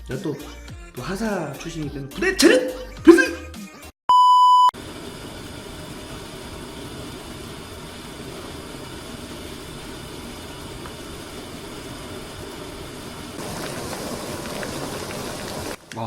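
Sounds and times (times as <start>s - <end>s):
short electronic beep: 4.1s - 4.7s
stew pot hissing and rumbling: 4.8s - 16.0s.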